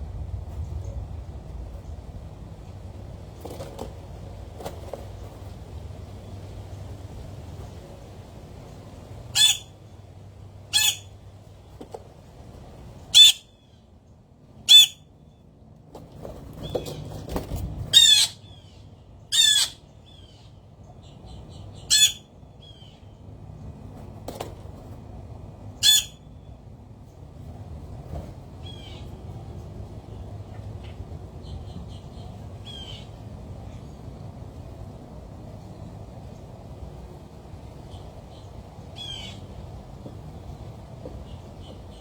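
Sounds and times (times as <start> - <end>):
birds squawking: 9.3 - 9.8, 10.7 - 11.2, 13.1 - 13.6, 14.7 - 15.0, 17.9 - 20.5, 21.8 - 23.0, 25.8 - 26.3.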